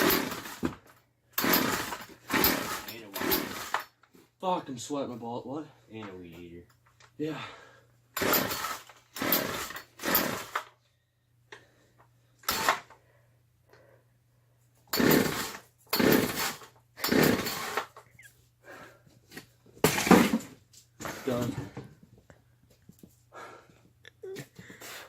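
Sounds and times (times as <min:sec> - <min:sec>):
chainsaw pull-start cranking: 0:00.0 - 0:04.0, 0:08.2 - 0:10.8, 0:12.4 - 0:13.0, 0:14.9 - 0:18.3.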